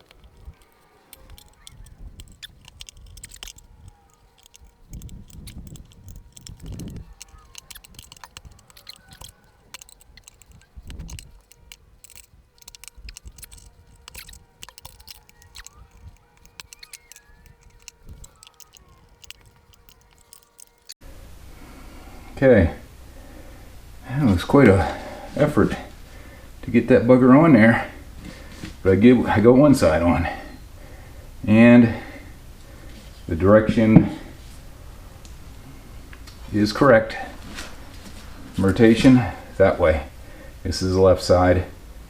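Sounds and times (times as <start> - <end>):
rubber squishing on metal rim: 0.0 - 21.0.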